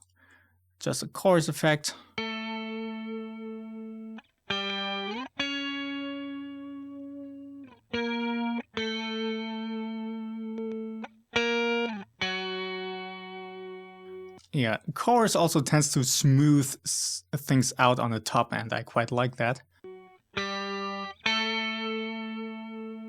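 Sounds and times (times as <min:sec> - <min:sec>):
clean electric guitar notes: 0:02.2 - 0:14.4, 0:19.8 - 0:23.0.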